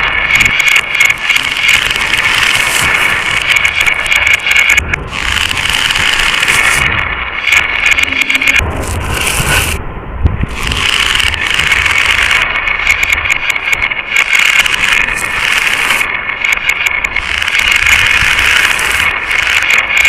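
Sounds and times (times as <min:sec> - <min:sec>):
glass marbles rattling on a track: 0:10.6 - 0:20.0.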